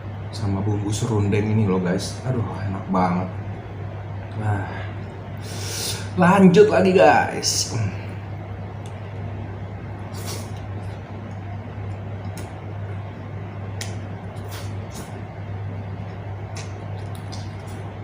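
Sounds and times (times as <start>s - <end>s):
steady low hum: 0.0s - 18.0s
chewing and mouth smacks: 16.0s - 18.0s.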